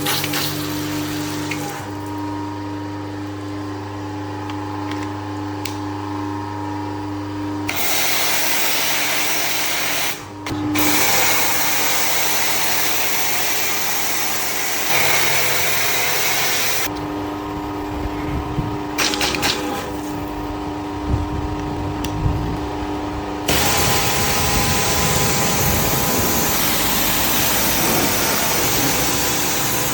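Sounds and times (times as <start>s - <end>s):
pressure washer motor hum: 0.0s - 2.4s, 7.6s - 29.9s
high-pressure spray hissing: 23.5s - 29.9s.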